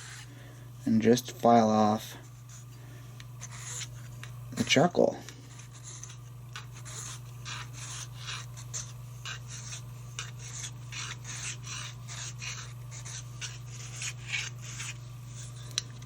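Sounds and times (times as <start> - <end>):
steady low hum: 0.0 - 16.0
hand file rasping: 5.5 - 16.0.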